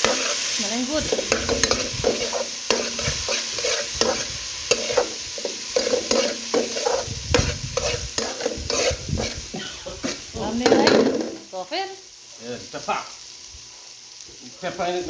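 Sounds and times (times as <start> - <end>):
utensil scraping pot: 0.0 - 11.4
seasoning sizzling in oil: 0.0 - 15.0.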